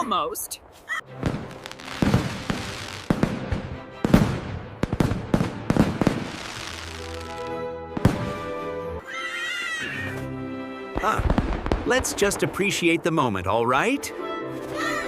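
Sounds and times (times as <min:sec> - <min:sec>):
cartoon fireworks bangs: 0:01.2 - 0:07.4
fireworks crackling: 0:01.3 - 0:08.4, 0:11.0 - 0:13.0.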